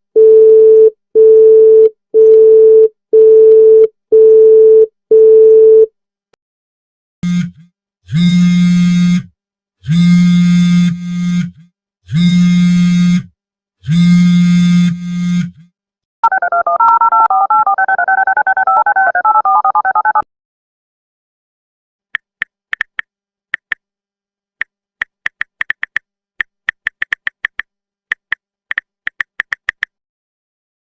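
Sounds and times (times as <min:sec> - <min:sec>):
mobile phone vibrating: 0:07.2 - 0:15.7.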